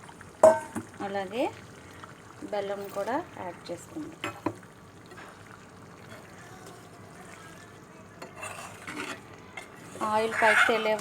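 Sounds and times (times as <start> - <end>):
broth bubbling: 0.0 - 7.9
spoon scraping pot: 8.2 - 11.0.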